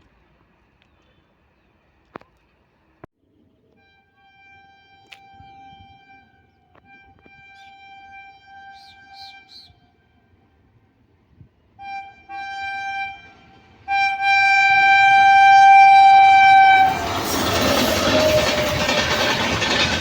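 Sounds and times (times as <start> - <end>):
locomotive horn blasts: 3.7 - 10.7, 11.7 - 19.2
train passing rushing and rattling: 12.1 - 20.0.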